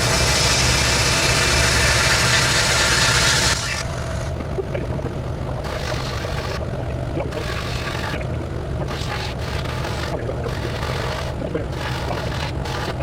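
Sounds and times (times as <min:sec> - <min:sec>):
sandblast gun hissing: 0:00.0 - 0:03.8
vacuum humming: 0:00.0 - 0:13.0.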